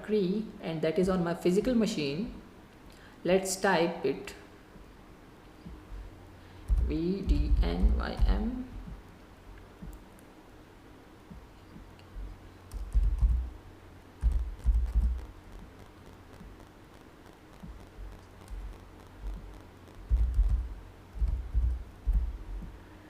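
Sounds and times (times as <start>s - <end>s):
keyboard typing: 6.6s - 9.0s, 12.7s - 13.5s, 14.2s - 16.7s, 17.3s - 22.7s.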